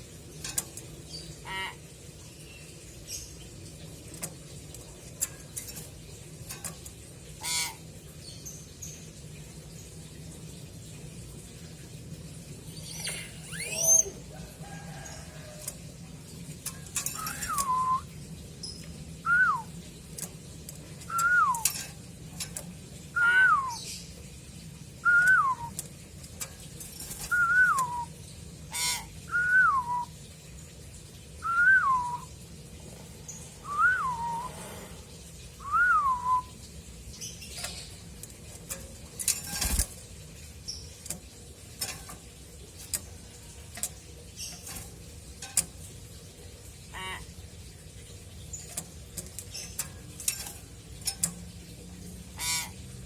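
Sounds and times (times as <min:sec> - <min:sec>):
myna whistling: 0:17.4 - 0:18.1, 0:19.3 - 0:19.7, 0:25.0 - 0:25.7, 0:27.3 - 0:28.1.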